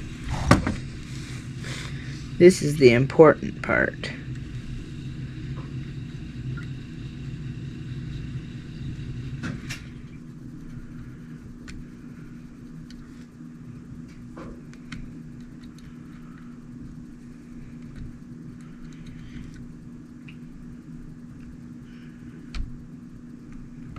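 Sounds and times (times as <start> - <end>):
low mechanical hum with tones: 0.0 - 23.9
small parts clicking and tapping: 17.8 - 20.4.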